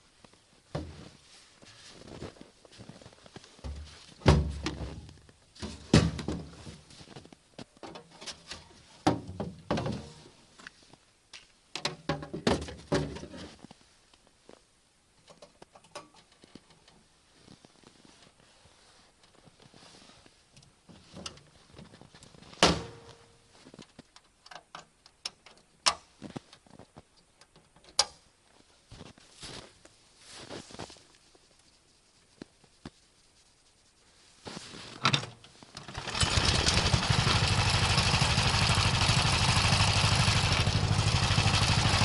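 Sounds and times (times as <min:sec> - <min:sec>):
knocks and thuds of handling: 0:00.7 - 0:01.2, 0:03.6 - 0:06.8, 0:07.8 - 0:10.3, 0:11.8 - 0:13.6.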